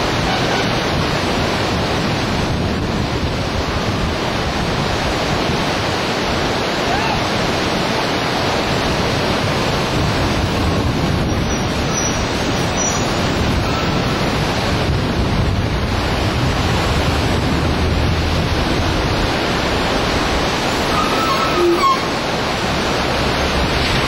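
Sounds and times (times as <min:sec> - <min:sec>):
whitewater rushing on river rapid: 0:00.0 - 0:24.0
wind buffeting microphone: 0:00.0 - 0:24.0.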